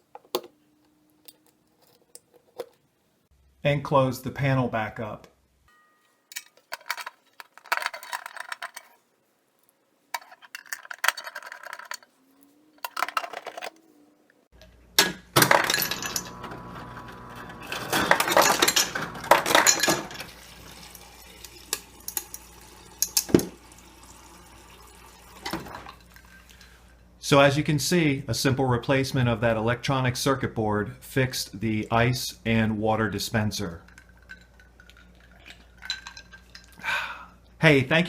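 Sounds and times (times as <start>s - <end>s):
ice dispenser humming: 15.3s - 26.7s
ice cubes clinking into glass: 15.4s - 16.4s, 17.7s - 20.4s, 33.9s - 36.8s
water running into glass: 18.2s - 26.1s.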